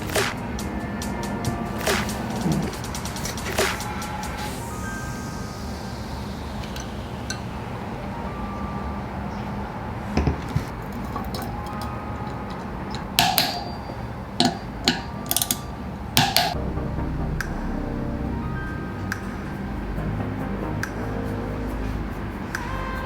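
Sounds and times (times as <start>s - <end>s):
metallic clinks of bicycle parts: 10.2s - 16.6s.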